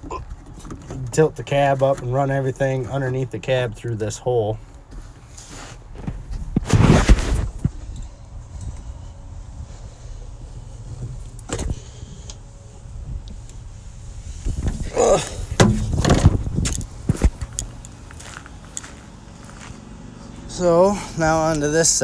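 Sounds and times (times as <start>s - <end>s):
metal panel creaking and clanking: 0.0s - 4.1s, 9.6s - 17.9s
footsteps: 4.6s - 21.7s.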